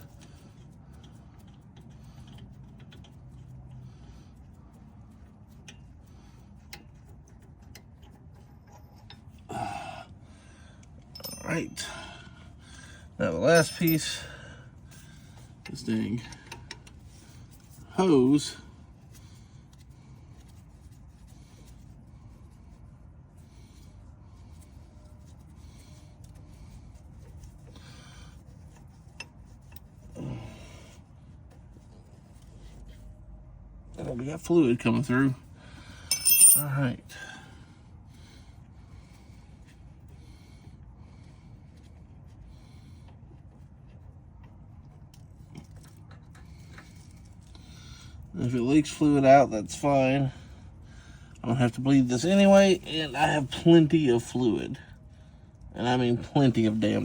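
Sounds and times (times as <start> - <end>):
hand tools scraping and ticking: 13.5 - 14.1, 36.1 - 36.7
hand tools clicking and tapping: 36.1 - 36.6.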